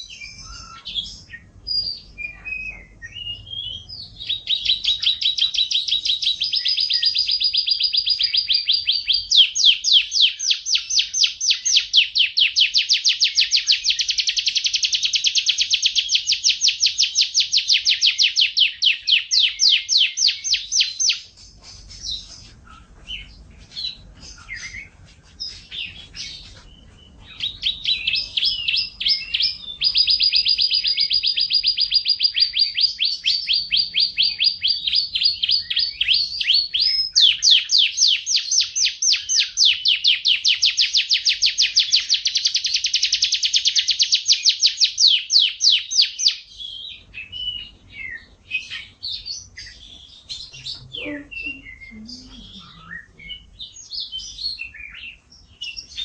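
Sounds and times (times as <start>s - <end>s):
canary singing: 0.0s - 56.0s.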